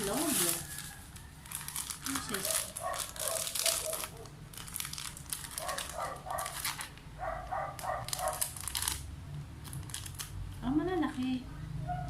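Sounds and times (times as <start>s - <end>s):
plastic packaging crinkling: 0.0s - 10.6s.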